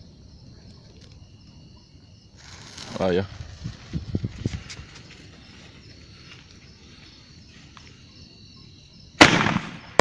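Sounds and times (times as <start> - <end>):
crickets chirring: 0.0 - 10.0
firework blast: 9.2 - 10.0.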